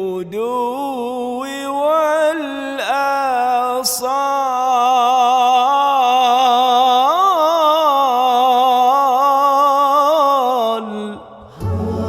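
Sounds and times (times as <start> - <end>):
man reciting melodically: 0.0 - 12.0.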